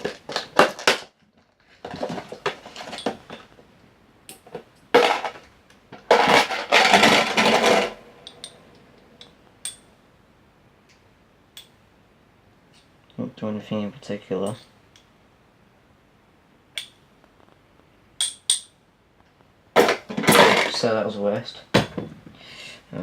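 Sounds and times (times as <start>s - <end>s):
hard parts clinking and clattering: 0.0s - 3.6s, 4.3s - 9.9s, 19.8s - 21.0s.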